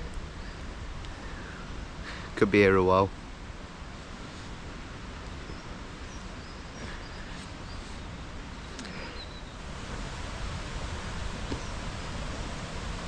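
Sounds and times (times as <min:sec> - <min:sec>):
waterfall and stream rushing: 0:00.0 - 0:13.0
bird chirping: 0:05.4 - 0:09.6.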